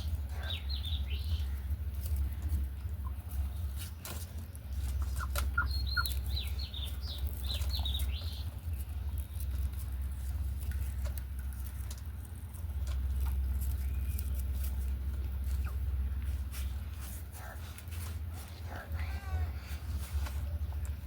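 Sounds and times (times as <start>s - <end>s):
budgies chirping: 0.0s - 12.1s
steady low hum: 0.0s - 21.0s.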